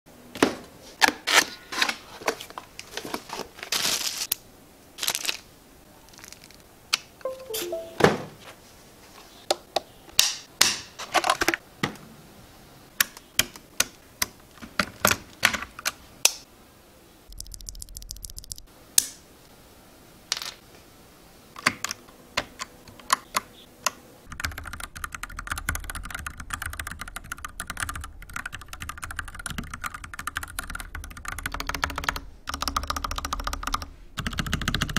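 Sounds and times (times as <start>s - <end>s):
mechanical keyboard typing: 17.4s - 18.6s, 24.3s - 34.9s.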